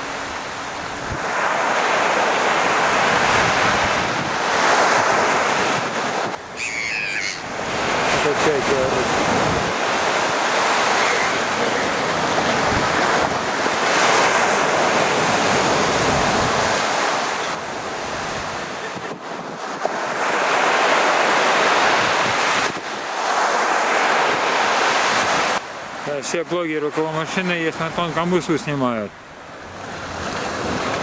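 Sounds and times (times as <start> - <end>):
waves breaking on shore: 0.0 - 31.0
wind buffeting microphone: 2.8 - 20.2.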